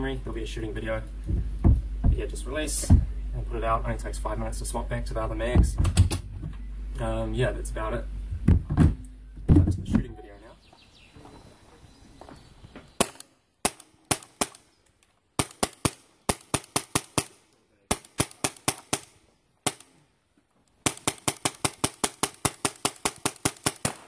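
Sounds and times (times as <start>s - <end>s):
paintball marker firing shots: 13.0s - 14.6s, 15.4s - 20.0s, 20.8s - 24.0s.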